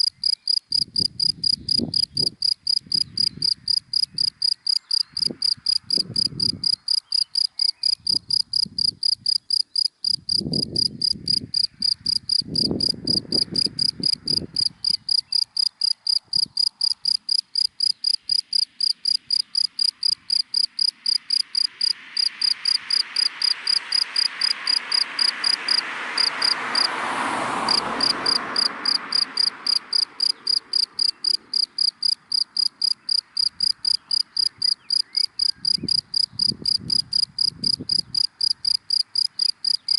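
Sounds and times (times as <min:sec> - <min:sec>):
cricket chirping: 0:00.0 - 0:27.0, 0:27.7 - 0:39.9
car passing: 0:10.3 - 0:17.3, 0:18.4 - 0:39.9.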